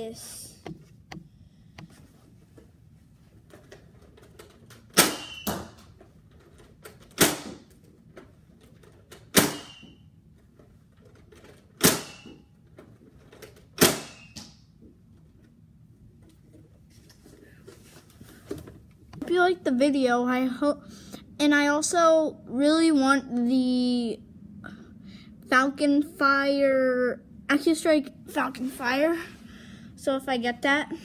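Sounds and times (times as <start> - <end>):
toy blaster shot bang: 5.0 - 5.7, 9.3 - 9.9, 11.8 - 12.4, 13.8 - 14.5.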